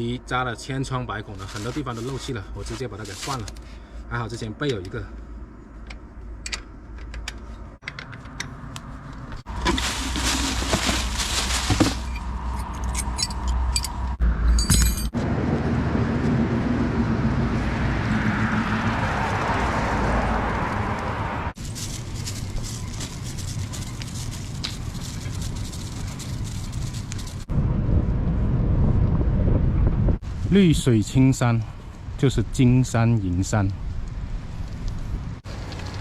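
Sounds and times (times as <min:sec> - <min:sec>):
vehicle running with road noise: 0:00.0 - 0:30.7, 0:31.7 - 0:36.0
metallic clicks and clinking: 0:12.1 - 0:15.2.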